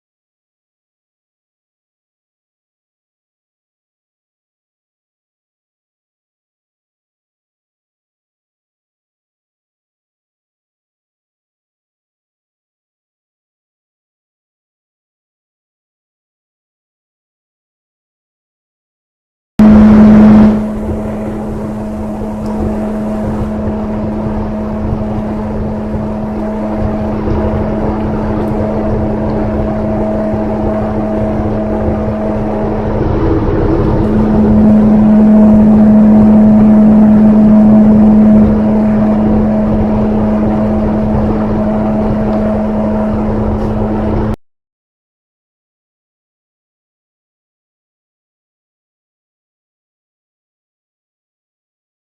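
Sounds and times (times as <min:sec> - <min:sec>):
machine humming: 0:19.6 - 0:44.4
rushing noise: 0:19.6 - 0:44.4.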